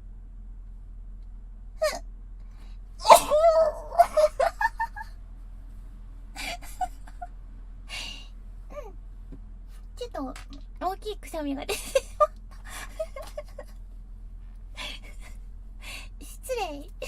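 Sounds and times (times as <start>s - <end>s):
woman sneezing: 3.0s - 3.8s.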